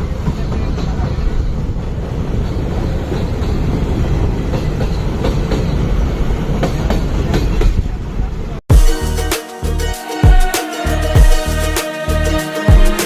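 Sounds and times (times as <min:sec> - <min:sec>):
wheels clicking over rail joints: 0:00.0 - 0:08.0
train rumbling on rails: 0:00.0 - 0:08.6.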